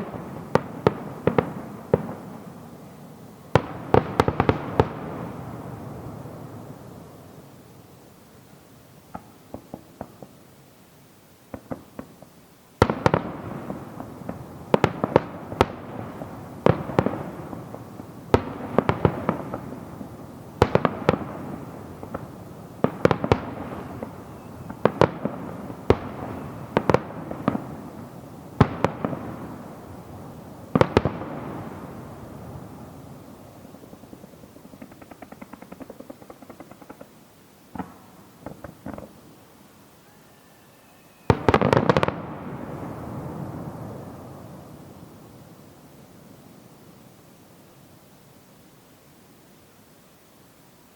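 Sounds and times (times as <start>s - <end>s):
fireworks crackling: 0.0s - 39.7s, 41.1s - 49.4s
small firework pops: 9.1s - 10.4s, 11.5s - 19.7s, 30.7s - 31.7s, 34.1s - 37.1s, 37.7s - 39.2s
firework shells bursting with bangs: 11.5s - 39.2s, 41.2s - 44.4s.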